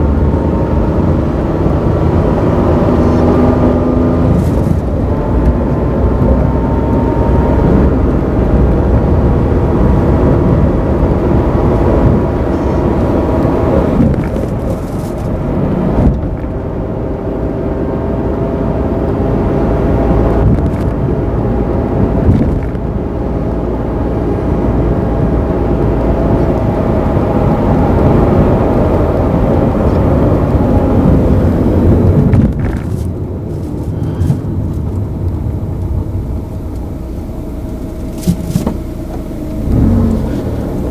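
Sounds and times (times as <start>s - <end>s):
car engine running: 0.0s - 40.9s
transmission abnormal noise: 26.0s - 40.9s.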